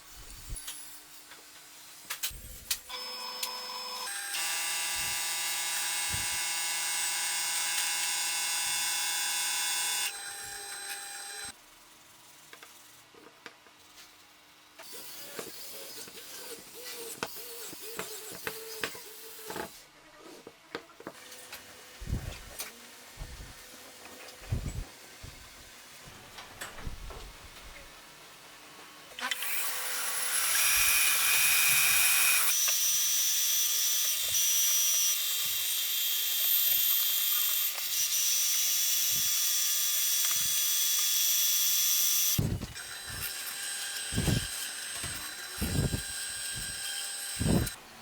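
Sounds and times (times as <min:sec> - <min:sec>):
power tool motor running: 0:02.9 - 0:11.5, 0:29.2 - 0:32.6, 0:38.1 - 0:47.8.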